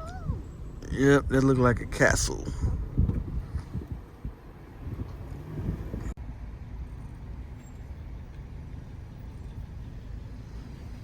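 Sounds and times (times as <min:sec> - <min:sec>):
wind buffeting microphone: 0:00.0 - 0:06.2
car rumbling in motion: 0:00.0 - 0:11.0.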